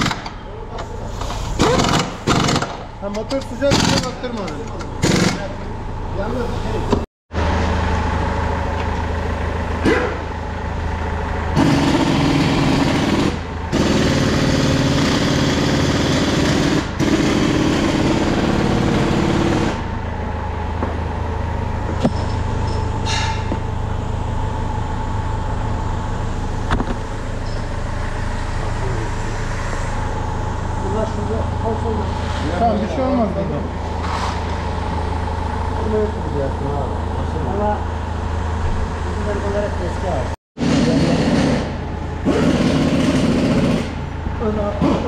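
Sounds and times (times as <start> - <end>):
loud rough sound: 40.6 - 44.2.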